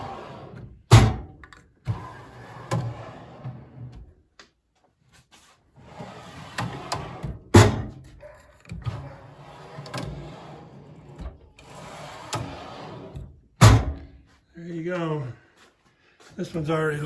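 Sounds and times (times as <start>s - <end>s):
drawer sliding with clicks: 0.0s - 4.0s, 5.9s - 8.0s, 8.6s - 14.0s
metal drawer thunk: 0.9s - 1.4s, 7.2s - 8.0s, 13.6s - 14.0s.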